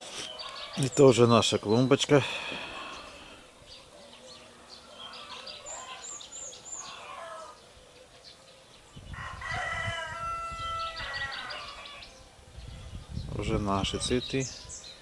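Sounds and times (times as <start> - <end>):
small bird chirping: 0.0 - 1.4, 2.8 - 9.2
rooster crowing: 4.4 - 7.6, 9.1 - 12.2.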